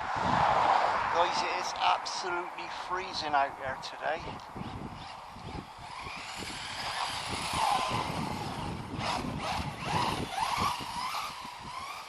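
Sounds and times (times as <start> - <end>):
electric toy car motor whining: 4.4 - 12.0.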